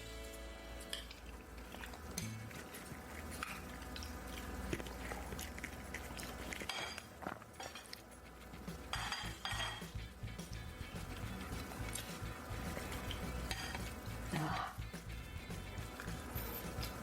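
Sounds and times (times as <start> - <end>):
person chewing food: 0.9 - 9.0, 15.7 - 17.0.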